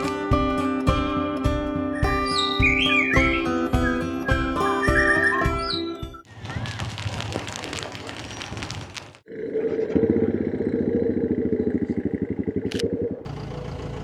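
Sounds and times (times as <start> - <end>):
engine running with fast pulse: 9.3 - 14.0.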